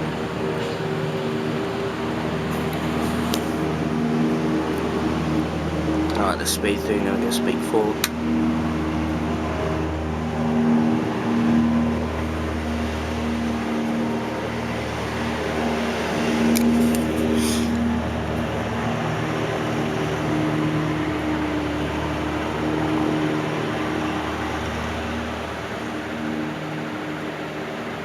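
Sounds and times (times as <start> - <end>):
air rushing from fan blades: 0.0 - 28.0
ceiling fan motor hum: 0.0 - 28.0.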